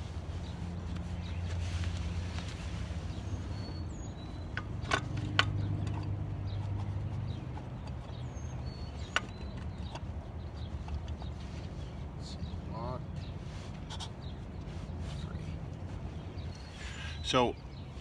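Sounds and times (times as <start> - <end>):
bird chirps: 3.0 - 4.8, 6.4 - 13.3.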